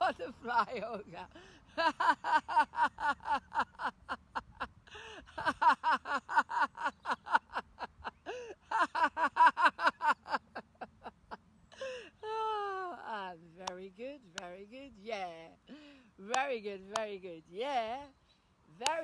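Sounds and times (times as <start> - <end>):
woman laughing rhythmically: 0.0 - 13.2
woman breathing: 1.3 - 1.7, 4.8 - 5.3, 8.2 - 8.6, 11.7 - 12.2, 15.7 - 16.2.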